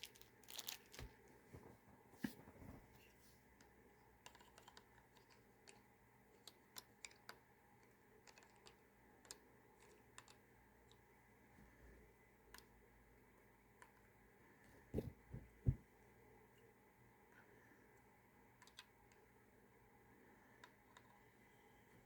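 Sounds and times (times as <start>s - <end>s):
small plastic parts clicking: 3.6s - 11.0s, 18.5s - 19.3s, 20.6s - 21.2s.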